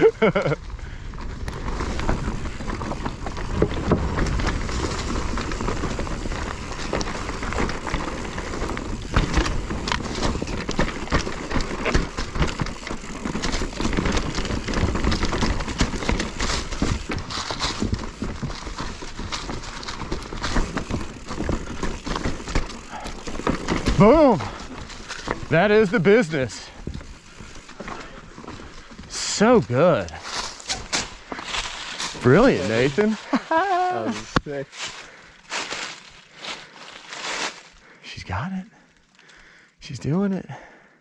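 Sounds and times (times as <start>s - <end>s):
tyres crunching over dirt and rock: 0.2s - 38.0s
bike knocks and rattles: 1.2s - 33.1s.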